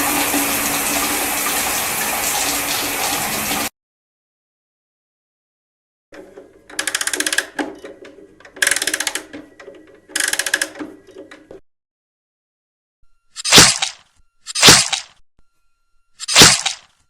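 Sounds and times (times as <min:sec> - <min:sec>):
small machine clattering: 0:06.2 - 0:11.5.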